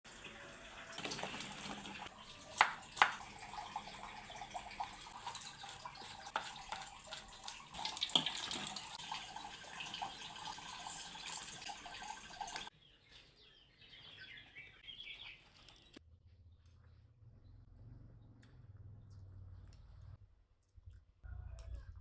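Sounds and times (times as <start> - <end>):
water running from tap into sink: 0.1 - 12.7.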